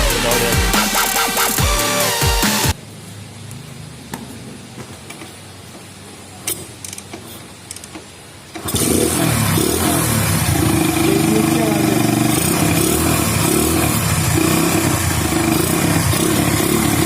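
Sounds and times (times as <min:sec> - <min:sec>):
motorcycle engine running loud: 0:08.7 - 0:17.0.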